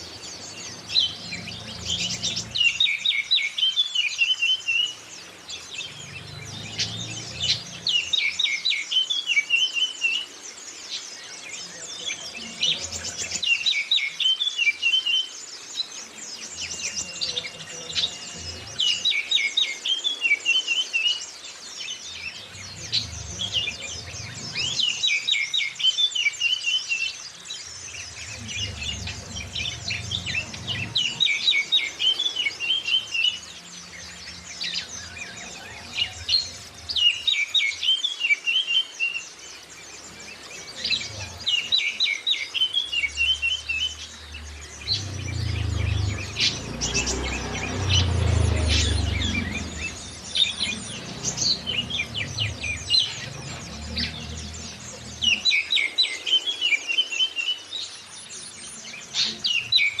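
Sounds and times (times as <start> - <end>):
birdsong with rapid chattering: 0.0 - 60.0
low rumble: 5.5 - 8.3, 22.3 - 25.2, 27.6 - 32.0, 44.0 - 55.5.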